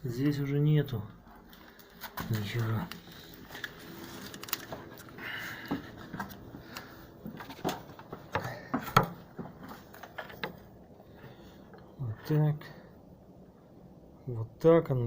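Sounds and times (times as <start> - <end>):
small parts clicking and rustling: 1.4 - 8.4.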